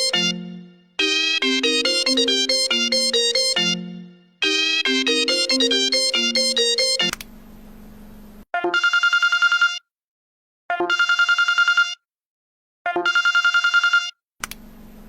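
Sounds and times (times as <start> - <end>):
phone ringtone telephone bell: 0.0 - 7.1, 8.6 - 9.8, 10.7 - 12.0, 12.9 - 14.2.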